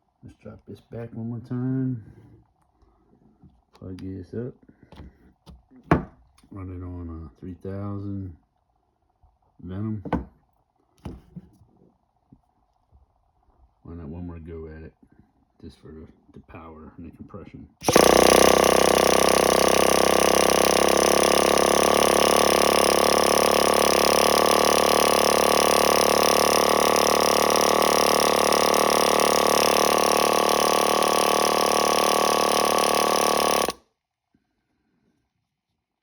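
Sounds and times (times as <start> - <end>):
small nitro engine buzzing: 17.8 - 33.8.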